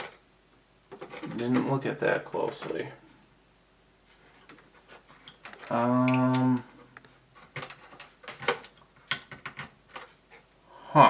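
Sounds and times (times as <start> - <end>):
plastic parts clicking and tapping: 0.0 - 0.2, 0.9 - 2.9, 4.2 - 10.4
man humming: 5.7 - 6.7.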